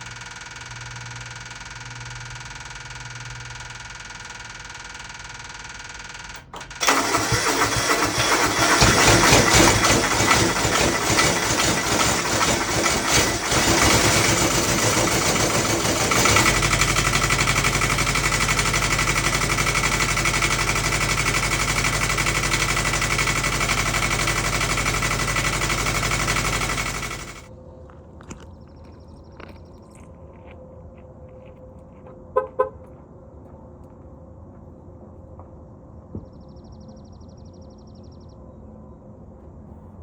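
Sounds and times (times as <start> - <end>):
diesel truck engine starting and idling: 0.0 - 27.5.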